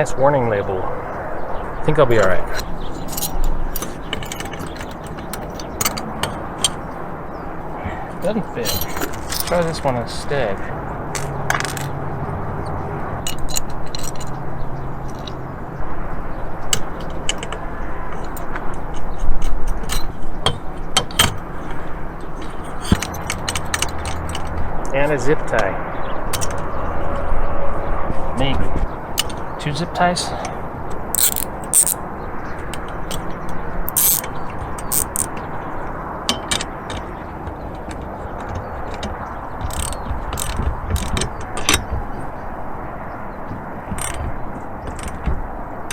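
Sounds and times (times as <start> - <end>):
small metal hardware clinking: 2.5 - 7.1, 8.1 - 10.0, 11.1 - 12.0, 12.7 - 15.6, 16.6 - 25.0, 26.3 - 26.7, 29.2 - 29.6, 30.9 - 45.9
zip ties clicking and rasping: 31.2 - 32.0, 33.9 - 35.3.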